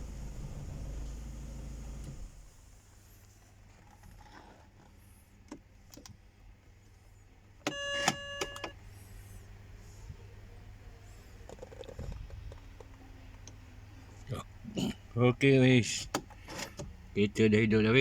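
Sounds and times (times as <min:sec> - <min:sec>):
car engine running: 0:00.0 - 0:02.8.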